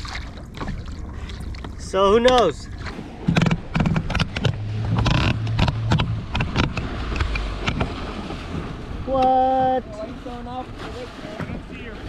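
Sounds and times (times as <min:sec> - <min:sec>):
low steady hum: 0:00.0 - 0:10.8
gear knocking and clicking: 0:03.2 - 0:08.0.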